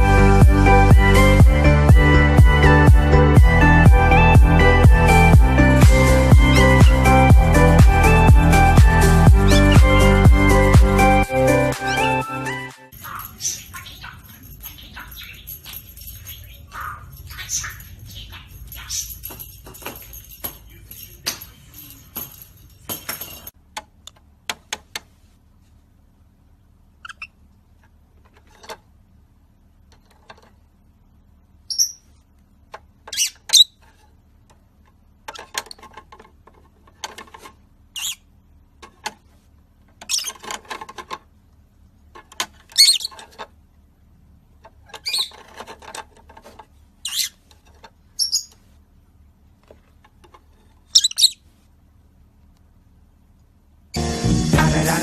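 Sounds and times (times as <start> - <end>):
pet bird chirping and squawking: 6.5 - 7.2, 9.3 - 10.2, 11.6 - 19.3, 27.0 - 27.4, 31.7 - 32.2, 33.1 - 33.8, 38.0 - 38.3, 40.0 - 40.5, 42.7 - 43.3, 44.9 - 45.5, 47.0 - 47.5, 48.1 - 48.6, 50.8 - 51.5
jingling rattle: 12.9 - 23.6.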